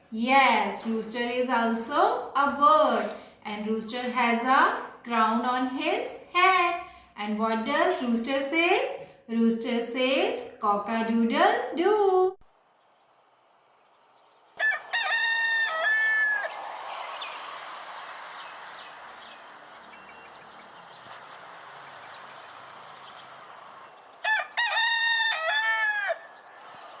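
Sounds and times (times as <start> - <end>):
rooster crowing: 14.6 - 16.6, 22.4 - 26.8
faint steady hiss: 16.5 - 24.2.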